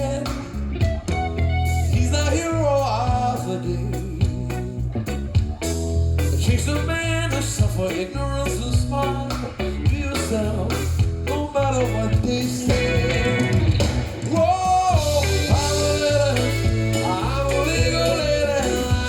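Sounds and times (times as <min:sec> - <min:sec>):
song over loudspeakers: 0:11.4 - 0:19.0.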